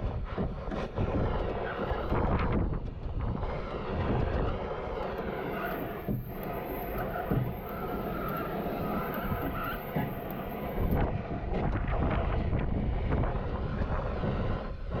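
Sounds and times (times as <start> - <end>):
powered machine running: 5.3 - 11.0.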